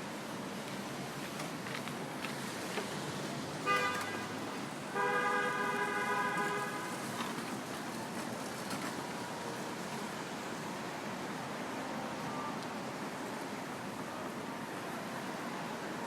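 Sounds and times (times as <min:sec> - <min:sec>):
street traffic hum: 0:00.0 - 0:16.0
car horn honking: 0:03.6 - 0:07.0.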